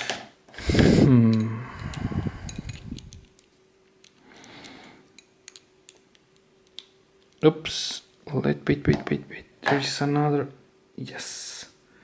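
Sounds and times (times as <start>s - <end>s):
person groaning: 0.7s - 2.0s.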